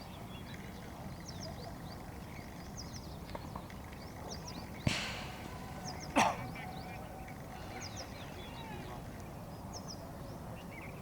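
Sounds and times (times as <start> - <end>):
birds chirping: 4.4 - 9.0
loud noisy knock: 4.9 - 6.2.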